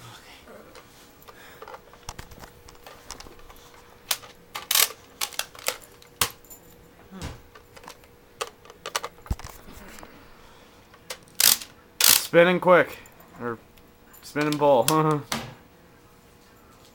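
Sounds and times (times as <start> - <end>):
toy blaster plastic clicking: 4.1 - 6.4, 7.8 - 9.1, 11.1 - 12.3.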